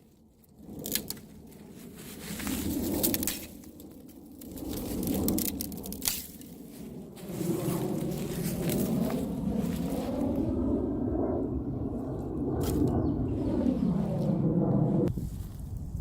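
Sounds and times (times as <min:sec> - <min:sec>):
rustling: 0:00.8 - 0:10.1.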